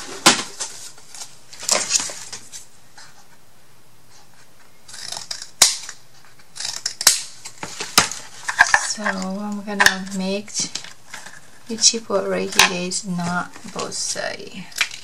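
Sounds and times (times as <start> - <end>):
paper rustling: 0.0 - 2.7
scissors cutting chipboard: 4.9 - 6.0, 6.6 - 7.3.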